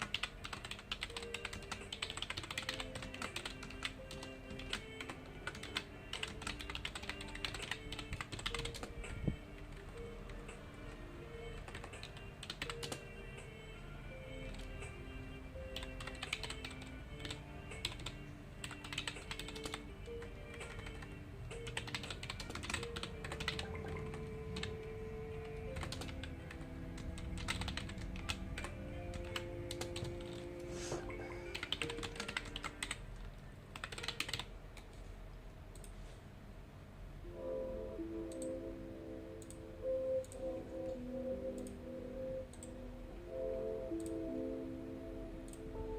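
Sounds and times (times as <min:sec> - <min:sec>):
typing on computer keyboard: 0:00.0 - 0:13.1, 0:14.4 - 0:14.8, 0:15.7 - 0:30.5, 0:31.5 - 0:35.0
soft background music: 0:00.0 - 0:45.9.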